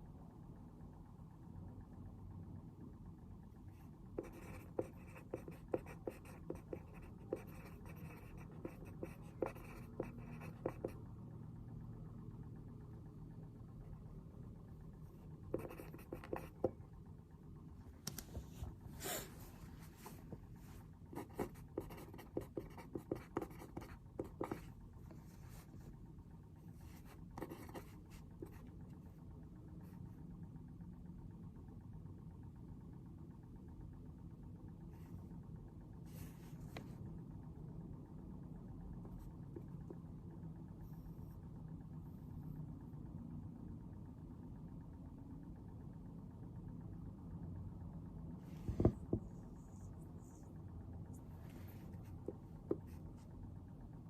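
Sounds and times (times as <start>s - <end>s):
low room hum: 0.0s - 54.0s
pen scratching on paper: 4.2s - 11.0s, 15.5s - 16.8s, 21.1s - 24.7s, 26.8s - 28.7s.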